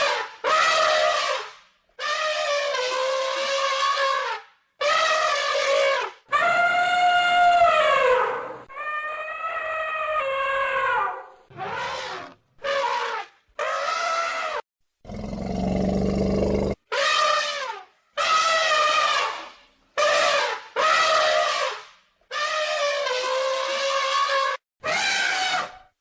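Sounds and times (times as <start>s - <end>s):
elephant trumpeting: 6.3s - 14.6s, 22.3s - 25.8s
elephant roaring call: 15.1s - 16.8s.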